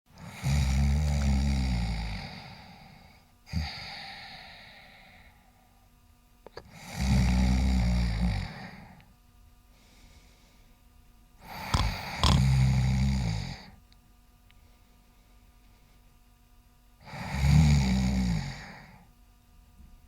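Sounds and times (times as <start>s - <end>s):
person snoring: 0.2s - 5.4s, 6.7s - 9.0s, 11.4s - 13.8s, 17.0s - 19.1s
faint breath: 2.2s - 5.9s, 9.7s - 12.4s, 14.5s - 16.2s.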